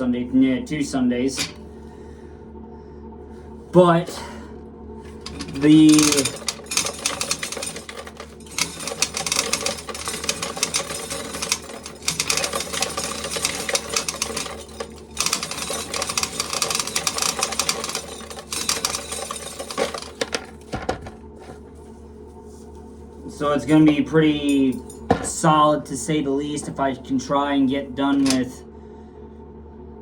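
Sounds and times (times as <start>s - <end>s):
corn sheller rattling: 1.4s - 1.6s, 5.1s - 21.7s, 28.1s - 28.5s.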